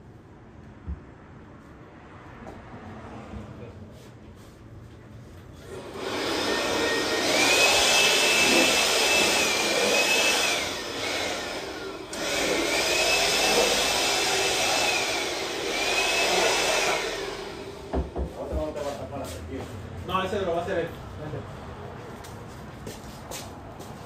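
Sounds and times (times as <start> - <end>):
electric motor whining: 5.7 - 17.9.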